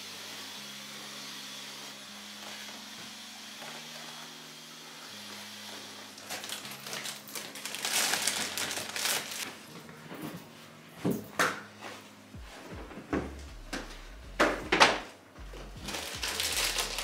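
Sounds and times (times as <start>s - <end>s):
rough rubbing noises: 12.0s - 17.0s
soft low sustained notes: 12.2s - 17.0s.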